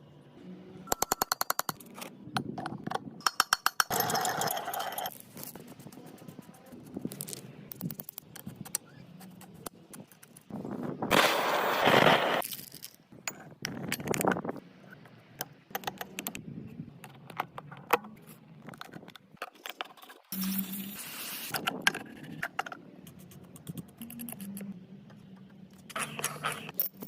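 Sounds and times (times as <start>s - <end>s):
metal tools clinking: 3.2s - 5.5s, 25.8s - 27.0s.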